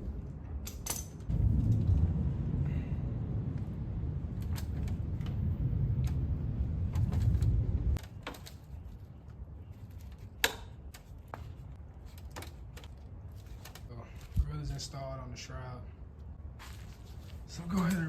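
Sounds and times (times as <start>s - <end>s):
low rumble: 1.2s - 8.0s.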